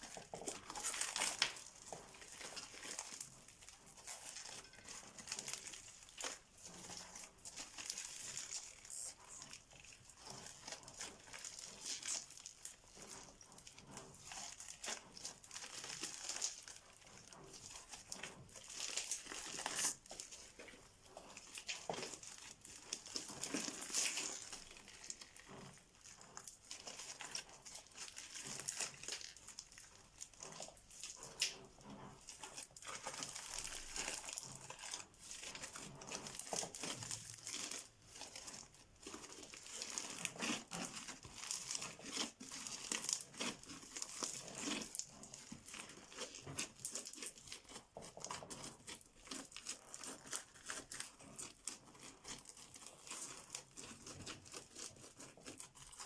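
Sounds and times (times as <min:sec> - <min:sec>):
slime crackling and popping: 0:00.0 - 0:56.0.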